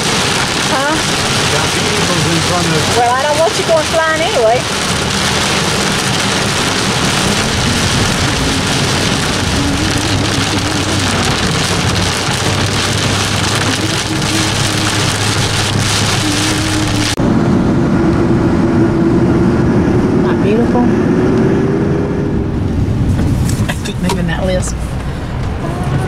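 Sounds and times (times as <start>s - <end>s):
heavy rain hitting a truck: 0.0s - 20.2s, 22.2s - 26.0s
engine drone: 0.0s - 26.0s
road noise: 0.0s - 26.0s.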